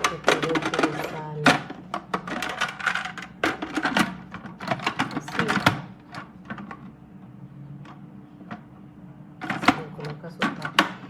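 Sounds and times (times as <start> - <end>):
plastic parts clicking and knocking: 0.0 - 6.9, 9.4 - 11.0.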